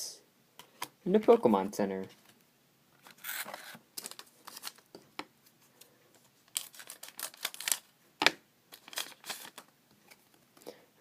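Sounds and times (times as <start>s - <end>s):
wrapper crinkling: 3.0s - 4.9s, 6.5s - 7.9s, 8.7s - 9.7s
cards being handled: 3.0s - 10.6s.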